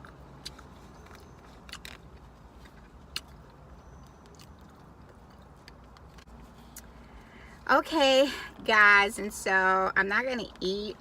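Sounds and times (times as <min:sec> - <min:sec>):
chewing clicks and smacks: 0:00.0 - 0:07.0
low hum inside a car: 0:00.0 - 0:11.0.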